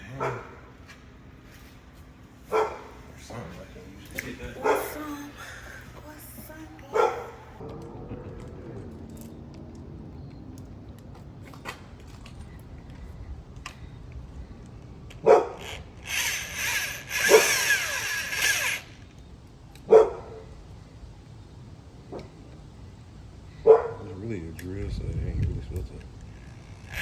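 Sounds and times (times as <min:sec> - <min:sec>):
dog barking: 0:00.0 - 0:00.7, 0:02.5 - 0:03.0, 0:04.6 - 0:05.0, 0:06.9 - 0:07.6, 0:15.2 - 0:15.6, 0:19.9 - 0:20.5, 0:23.6 - 0:24.1
power drill whirring: 0:15.6 - 0:19.2, 0:26.2 - 0:27.0.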